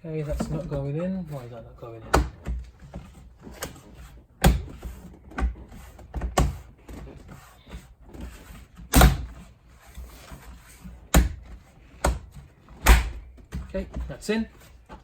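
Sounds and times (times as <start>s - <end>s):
rustling and handling: 0.0s - 15.0s
plastic trim thumps: 2.0s - 9.4s, 11.0s - 14.2s.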